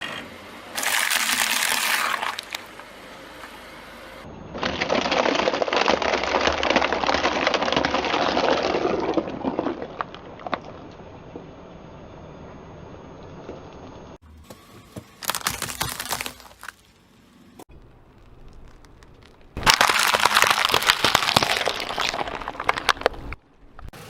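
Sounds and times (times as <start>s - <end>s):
objects crushed under car tyre: 0.8s - 2.8s, 4.5s - 11.4s, 14.4s - 16.9s, 18.1s - 23.4s.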